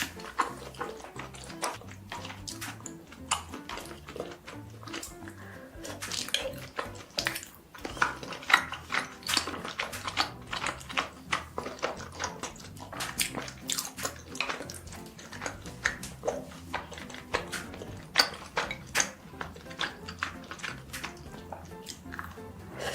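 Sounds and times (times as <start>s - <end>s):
wet chewing and mouth smacking: 0.0s - 22.9s.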